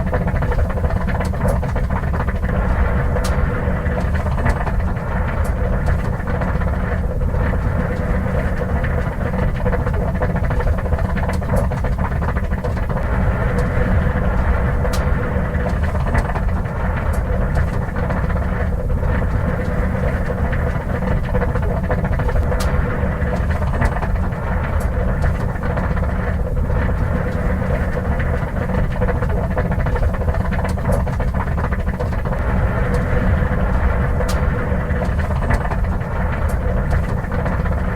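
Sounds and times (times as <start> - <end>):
car engine idling: 0.0 - 37.9
radiator water boiling: 0.0 - 37.9.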